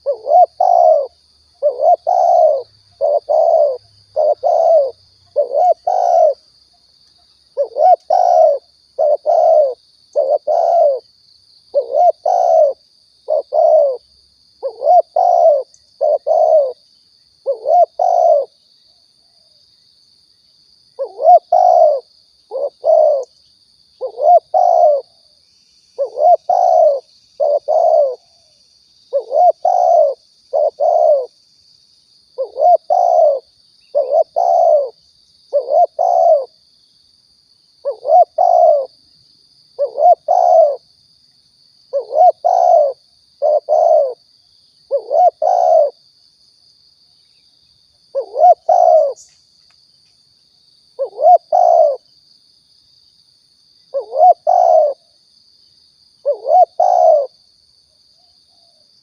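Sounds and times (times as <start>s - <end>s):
dove cooing: 0.0s - 6.4s, 7.6s - 11.1s, 11.7s - 14.0s, 14.6s - 16.8s, 17.4s - 18.6s, 21.0s - 23.3s, 24.0s - 25.2s, 26.0s - 31.4s, 32.4s - 36.6s, 37.8s - 39.0s, 39.8s - 40.8s, 41.9s - 44.2s, 44.9s - 46.0s, 48.1s - 49.3s, 51.0s - 52.1s, 53.9s - 55.1s, 56.2s - 57.4s.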